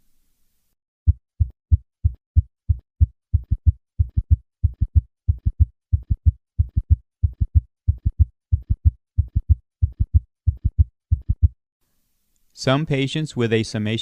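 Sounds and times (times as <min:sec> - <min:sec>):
heartbeat thuds: 0:01.1 - 0:11.6.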